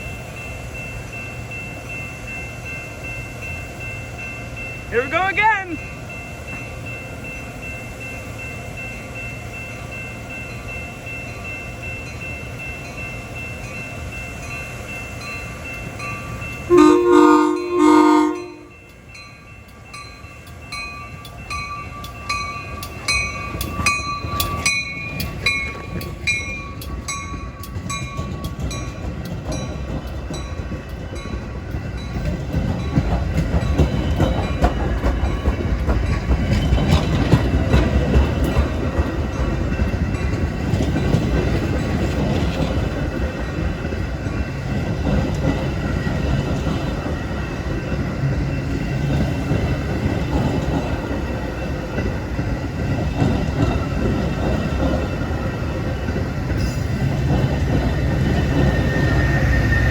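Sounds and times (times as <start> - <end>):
bell ringing steadily: 0.0 - 58.6
low rumble of train: 0.0 - 59.9
train air horn blast: 16.7 - 18.7.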